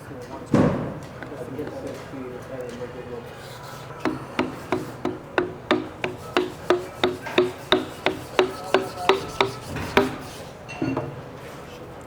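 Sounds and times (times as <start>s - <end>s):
hand tool strokes on pump: 1.2s - 2.0s, 3.2s - 10.6s
small knock: 3.4s - 10.3s.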